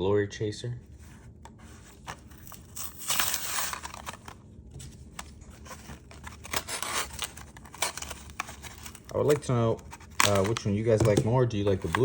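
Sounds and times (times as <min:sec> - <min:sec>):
packaging crinkles and clicks: 0:02.1 - 0:04.4, 0:05.2 - 0:12.0
blister pack tearing: 0:02.3 - 0:04.4, 0:06.0 - 0:10.6.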